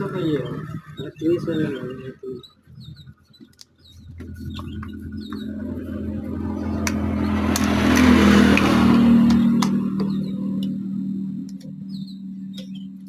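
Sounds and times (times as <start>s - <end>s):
engine running: 3.9s - 13.0s.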